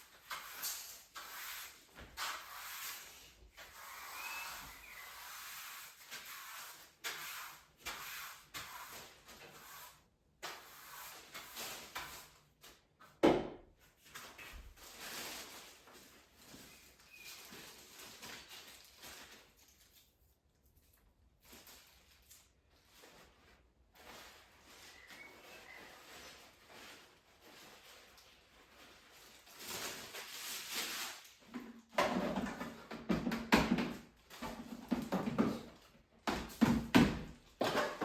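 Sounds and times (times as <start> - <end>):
objects rubbing and scraping: 0.2 - 9.9.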